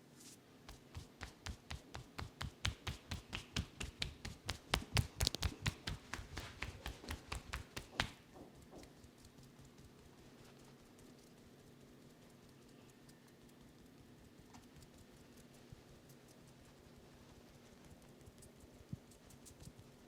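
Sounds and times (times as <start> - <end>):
hands patting on head: 0.7 - 8.3.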